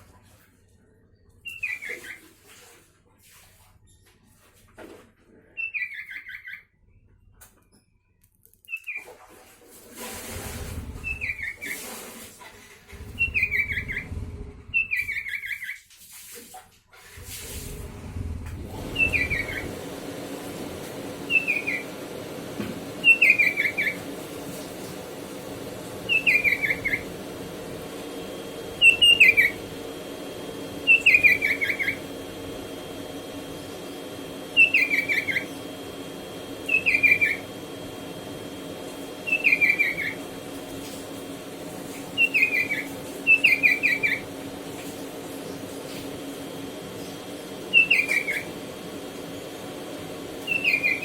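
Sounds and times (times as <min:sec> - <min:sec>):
steady low hum: 0:12.9 - 0:15.1, 0:17.2 - 0:51.0
bulbul singing: 0:13.2 - 0:14.1, 0:14.7 - 0:15.8, 0:21.3 - 0:21.9, 0:23.0 - 0:24.0, 0:26.0 - 0:27.2, 0:28.7 - 0:29.7, 0:30.8 - 0:32.1, 0:34.5 - 0:35.6, 0:36.6 - 0:37.5, 0:39.2 - 0:40.2, 0:42.2 - 0:44.3, 0:47.7 - 0:48.6, 0:50.4 - 0:51.0.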